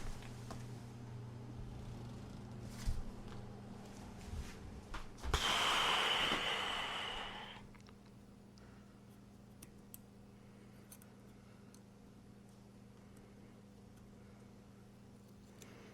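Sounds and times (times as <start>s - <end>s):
hissing air blast with whistle: 5.3s - 7.6s.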